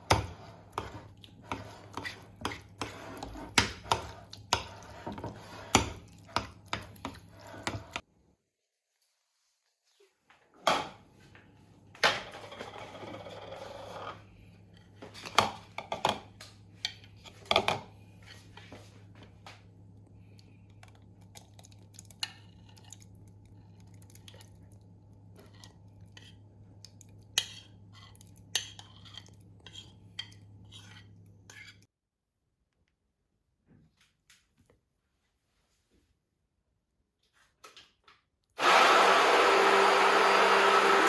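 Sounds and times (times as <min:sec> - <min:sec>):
utensils scraping: 0:00.3 - 0:08.0.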